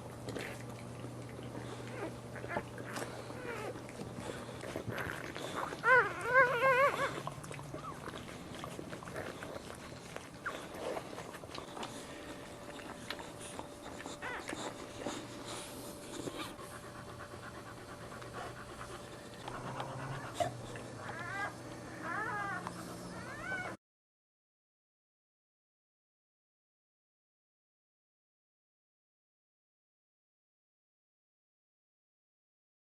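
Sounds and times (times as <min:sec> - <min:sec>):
dog whining: 0:01.6 - 0:23.8.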